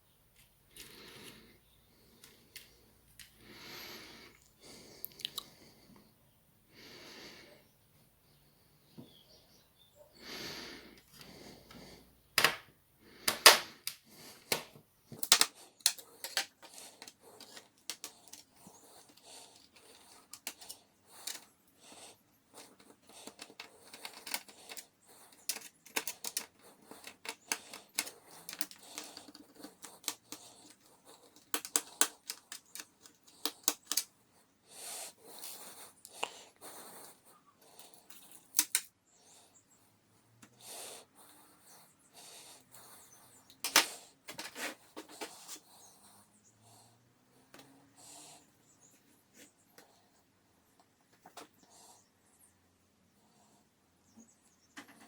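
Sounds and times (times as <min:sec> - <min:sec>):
clicks and taps of plastic and metal: 0:12.4 - 0:21.5, 0:22.6 - 0:34.1, 0:43.6 - 0:45.1, 0:54.8 - 0:55.0.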